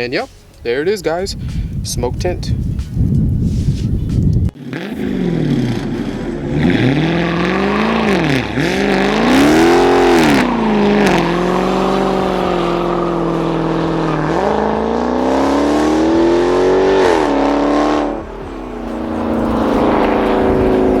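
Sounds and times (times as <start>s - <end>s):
car engine revving: 4.5s - 21.0s.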